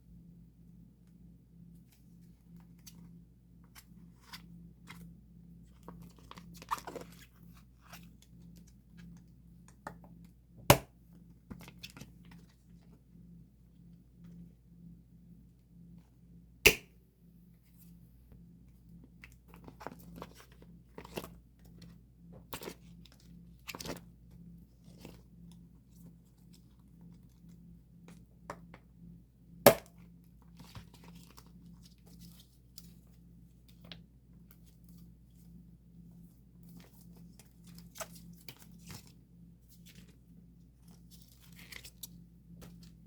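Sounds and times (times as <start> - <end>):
steady low hum: 0.0 - 43.0.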